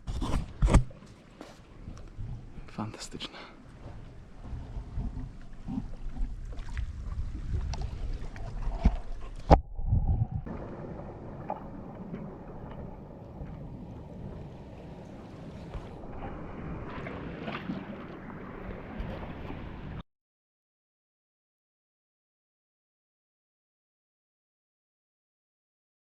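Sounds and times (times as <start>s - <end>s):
water noise from paddled boat: 0.0s - 20.0s
wind buffeting microphone: 1.7s - 2.8s, 3.7s - 20.0s.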